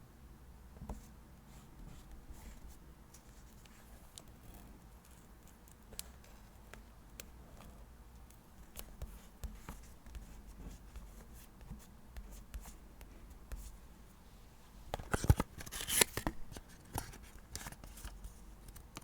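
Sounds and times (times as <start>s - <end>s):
pen scratching on paper: 8.7s - 12.8s.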